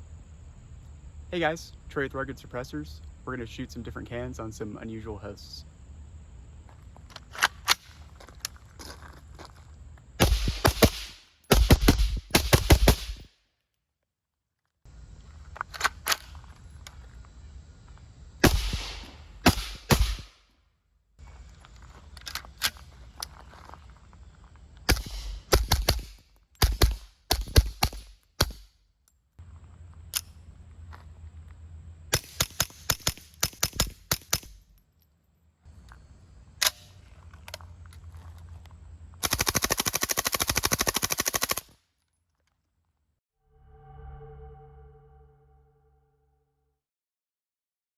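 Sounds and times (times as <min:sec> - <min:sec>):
suppressed gunfire: 0:10.2 - 0:13.3, 0:18.4 - 0:20.4, 0:24.9 - 0:28.6.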